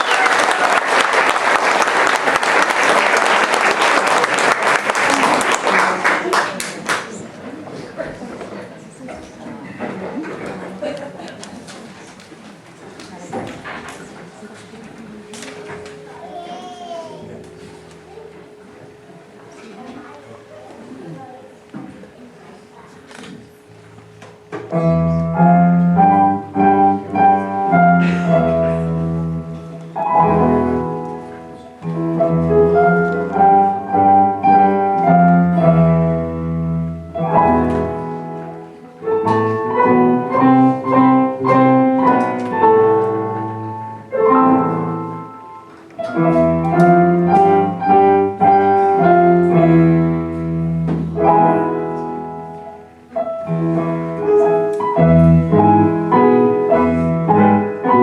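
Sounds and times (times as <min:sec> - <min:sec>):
ensemble playing piano-like chords: 0:14.3 - 0:22.2, 0:23.5 - 0:58.0.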